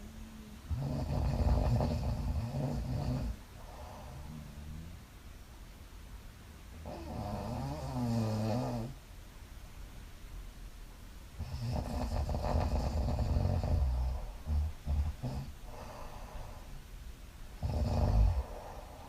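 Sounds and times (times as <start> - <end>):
woman snoring: 0.0 - 5.0, 6.8 - 9.0, 11.4 - 16.7, 17.6 - 19.0.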